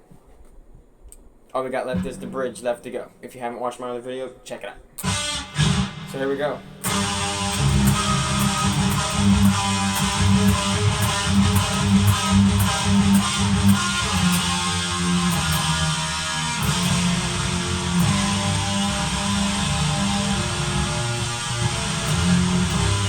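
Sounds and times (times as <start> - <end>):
distorted electric guitar riff: 5.0 - 23.0.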